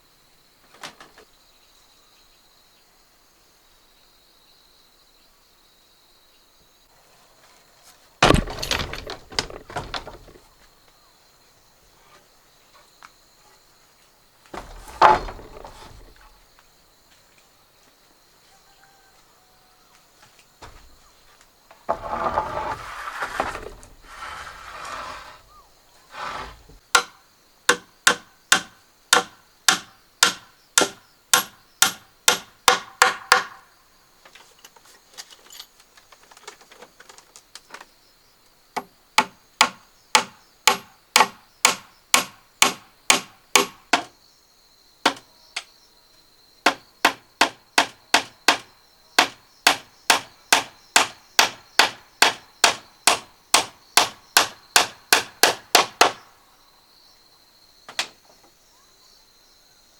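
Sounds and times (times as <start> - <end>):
hammer striking wood: 8.2 - 10.4, 14.6 - 16.2, 26.9 - 33.6, 38.8 - 44.1, 46.7 - 56.2.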